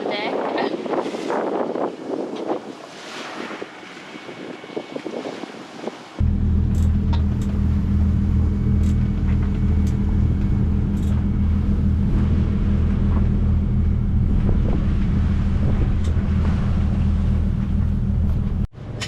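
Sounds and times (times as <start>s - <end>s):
diesel engine low hum: 6.2s - 19.0s.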